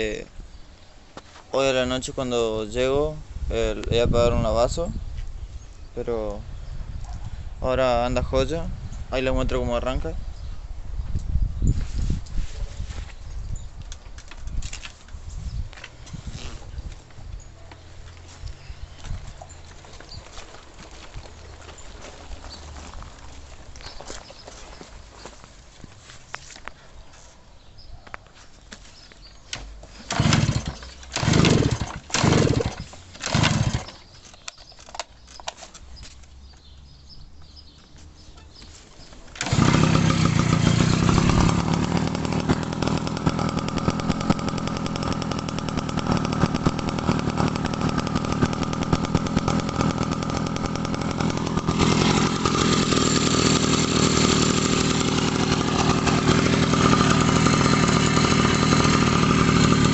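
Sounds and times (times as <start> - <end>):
motorcycle engine cranking: 29.5 - 36.7, 39.3 - 59.9
two-stroke motorcycle engine running: 30.0 - 34.0, 39.4 - 59.9.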